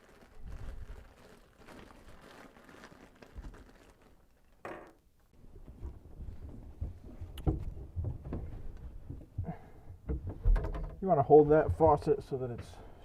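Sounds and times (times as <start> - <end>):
faucet parts and packaging rustling: 0.0 - 5.0.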